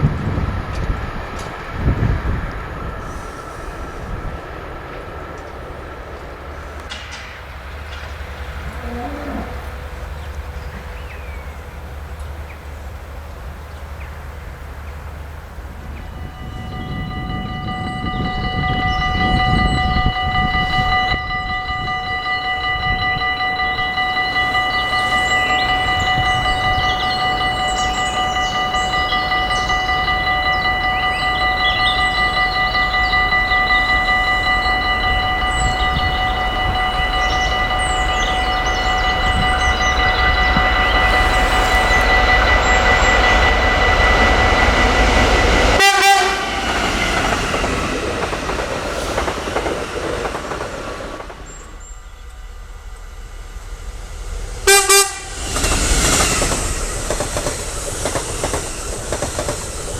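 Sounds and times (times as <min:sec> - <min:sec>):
train rumble: 0:00.0 - 0:59.9
short train horn blasts: 0:06.6 - 0:11.8, 0:16.0 - 0:50.4, 0:54.6 - 0:56.8
level crossing bell ringing: 0:16.2 - 0:51.3.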